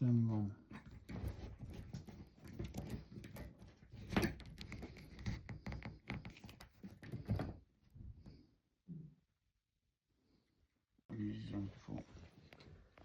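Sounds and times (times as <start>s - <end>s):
handling clicks and knocks: 0.7s - 7.6s.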